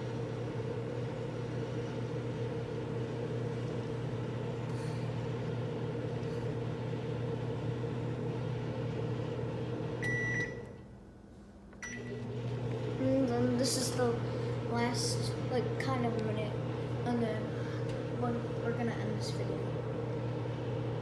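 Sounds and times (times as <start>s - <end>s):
microwave oven humming: 0.0s - 21.0s
microwave beep: 9.9s - 10.8s, 11.8s - 12.4s.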